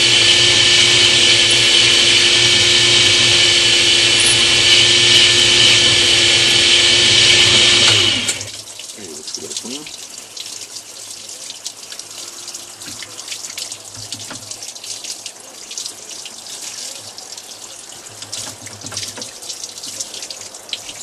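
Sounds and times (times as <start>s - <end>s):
drill crackling through stone: 0.0s - 8.6s
drill motor hum: 0.0s - 8.6s
water spattering on stone: 8.4s - 21.0s.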